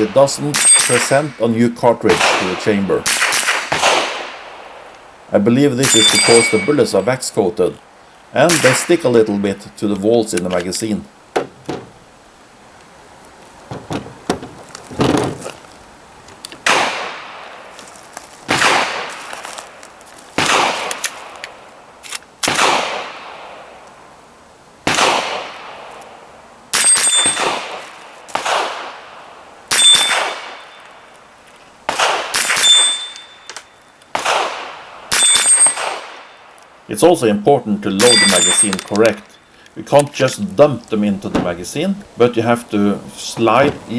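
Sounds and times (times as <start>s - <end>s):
bullets clanging on steel plates: 0.5s - 1.4s, 5.8s - 7.2s, 26.8s - 27.6s, 29.7s - 30.8s, 35.1s - 35.9s, 38.0s - 39.4s
rifle shots: 0.5s - 1.4s, 2.1s - 4.9s, 16.6s - 17.6s, 18.5s - 19.2s, 20.4s - 21.4s, 22.4s - 23.5s, 24.8s - 25.8s, 26.7s - 30.8s, 31.9s - 33.4s, 34.1s - 36.3s.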